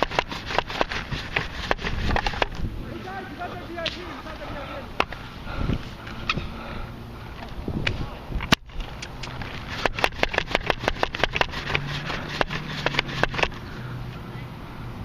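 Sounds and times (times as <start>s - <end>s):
toy blaster clicks: 8.9s - 13.6s.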